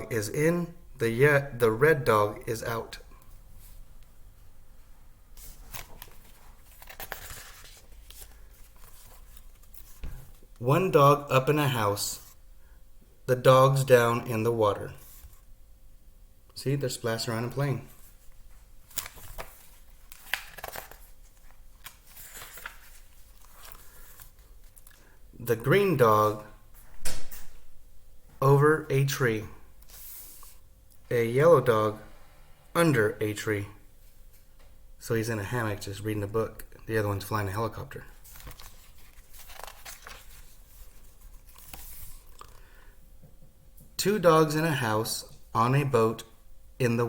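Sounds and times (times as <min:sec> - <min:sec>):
paper rustling: 0:05.4 - 0:11.0, 0:17.8 - 0:25.1, 0:38.1 - 0:42.7.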